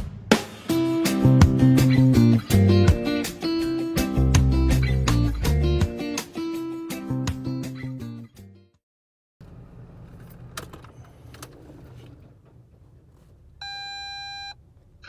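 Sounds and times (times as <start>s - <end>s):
truck cab rumble: 9.4s - 15.0s
electronic beep: 13.6s - 14.6s.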